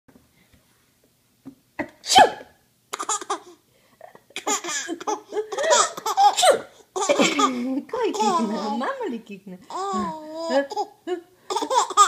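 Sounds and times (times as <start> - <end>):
woman sneezing: 2.0 - 2.6, 6.4 - 6.7
baby laughing: 2.9 - 8.8, 9.7 - 12.0.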